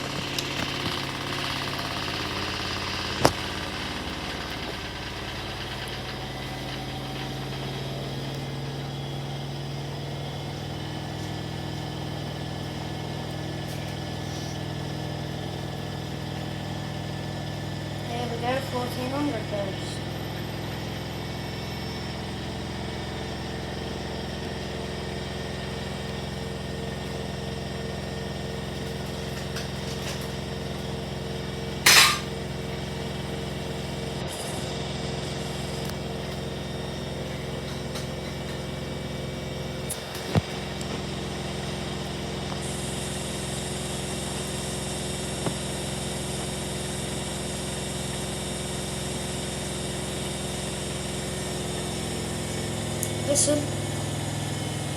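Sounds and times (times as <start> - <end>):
washing machine humming: 0.0 - 54.9
loud short burst of noise: 31.8 - 32.3
sharp click: 31.9 - 32.3.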